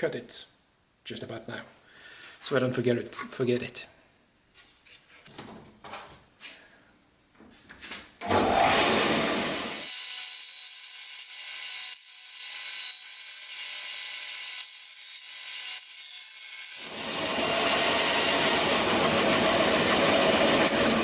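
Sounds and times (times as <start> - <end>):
saw cutting plywood: 8.2 - 21.0.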